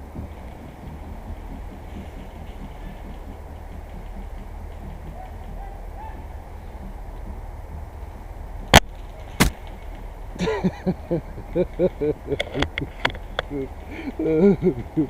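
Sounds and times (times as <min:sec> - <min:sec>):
wind on microphone: 0:00.0 - 0:15.0
distant voice calling out: 0:05.1 - 0:06.5
airsoft gun cracks: 0:08.7 - 0:09.9.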